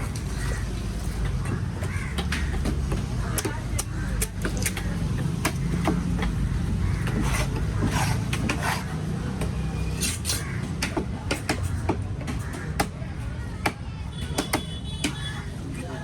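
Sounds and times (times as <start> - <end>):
knife chopping fish: 1.2 - 13.0
knife scraping: 7.0 - 9.0, 9.9 - 10.4.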